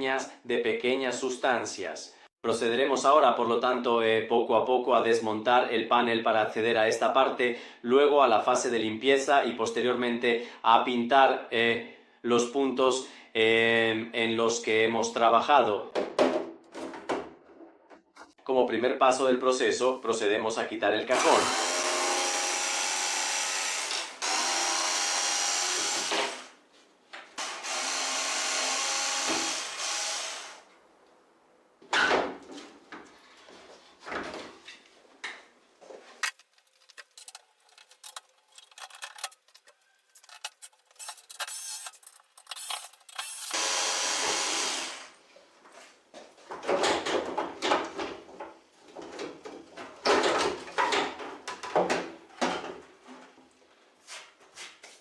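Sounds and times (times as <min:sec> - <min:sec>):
cordless screwdriver running: 0:21.2 - 0:26.4, 0:27.4 - 0:30.6, 0:42.5 - 0:45.1
clicks and knocks of parts: 0:36.2 - 0:43.6.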